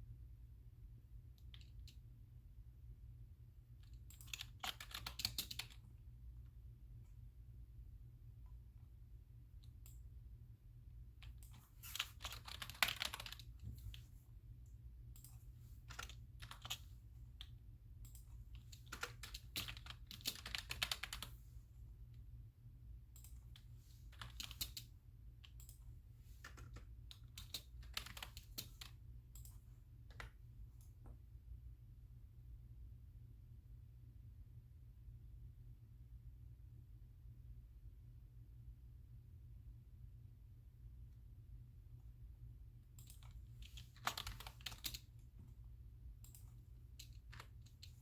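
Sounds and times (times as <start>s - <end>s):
typing on computer keyboard: 1.4s - 2.0s, 3.8s - 5.9s, 11.2s - 14.1s, 15.1s - 21.4s, 23.2s - 30.4s, 43.0s - 45.2s, 46.2s - 48.0s.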